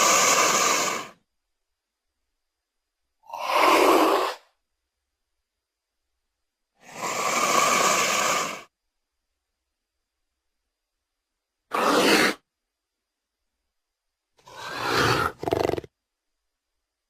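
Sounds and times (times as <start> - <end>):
creature breathy hissing exhales: 0.0 - 1.2, 3.3 - 4.5, 6.8 - 8.7, 11.7 - 12.4, 14.4 - 15.9.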